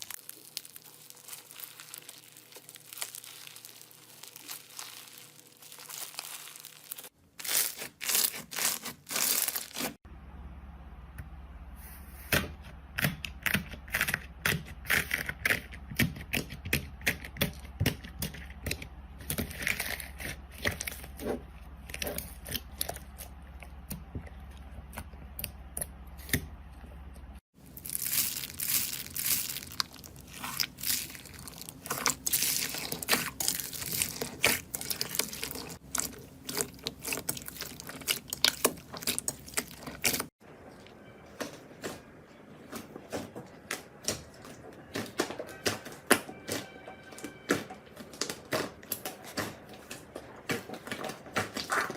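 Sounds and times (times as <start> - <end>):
slime popping and crackling: 0.0 - 10.0, 27.6 - 40.4.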